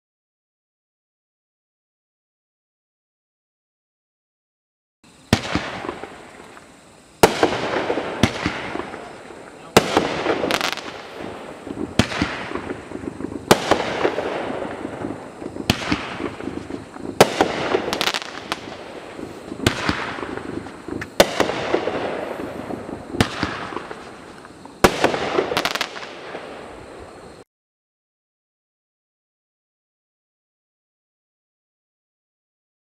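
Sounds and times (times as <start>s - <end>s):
firework hiss and crackle: 5.0s - 27.5s
firework sharp bangs: 5.1s - 27.4s.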